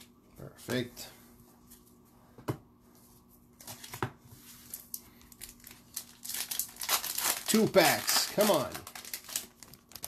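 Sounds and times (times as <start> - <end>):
wrapper tearing and crinkling: 5.4 - 10.0.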